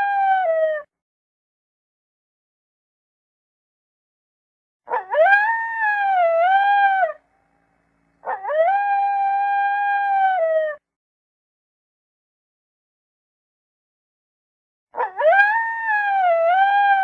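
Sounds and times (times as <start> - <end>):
wolf howling: 4.9 - 7.2, 8.2 - 10.8, 15.0 - 17.0.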